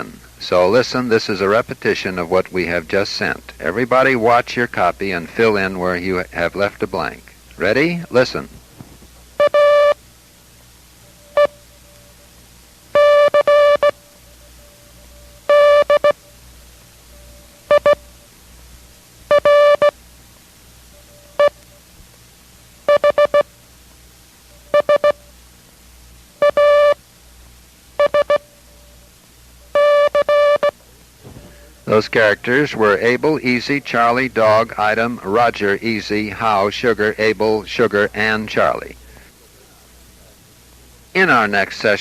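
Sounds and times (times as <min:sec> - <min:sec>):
morse code buzzy tone: 0:09.4 - 0:10.0, 0:11.0 - 0:18.4, 0:19.3 - 0:20.0, 0:20.8 - 0:21.9, 0:22.8 - 0:23.6, 0:24.5 - 0:25.4, 0:26.4 - 0:27.0, 0:28.0 - 0:30.8.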